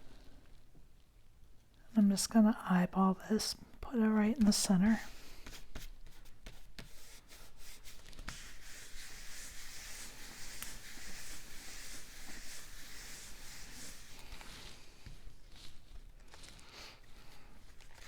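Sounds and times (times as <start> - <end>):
papery rubbing: 4.9 - 18.0.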